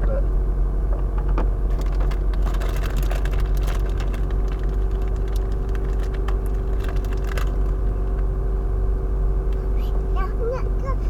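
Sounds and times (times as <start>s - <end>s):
car rumble from inside cabin: 0.0s - 11.0s
small clicks and crackles: 1.7s - 8.3s.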